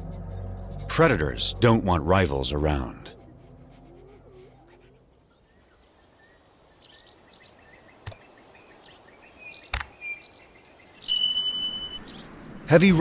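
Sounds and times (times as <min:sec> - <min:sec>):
birds chirping: 0:00.0 - 0:13.0
high insect whine: 0:03.0 - 0:13.0
sharp clicks: 0:09.7 - 0:09.9.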